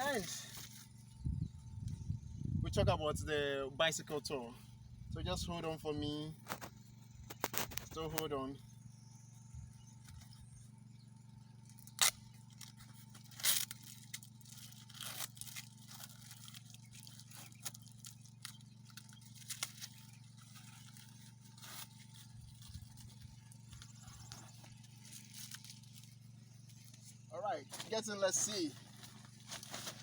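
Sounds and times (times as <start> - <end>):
faint low hum: 0.0 - 30.0
tent fabric scraping and rustling: 27.7 - 30.0.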